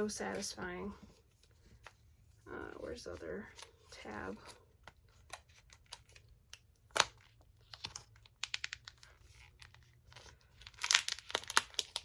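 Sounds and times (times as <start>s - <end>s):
plastic film peeling and crinkling: 4.8s - 12.0s.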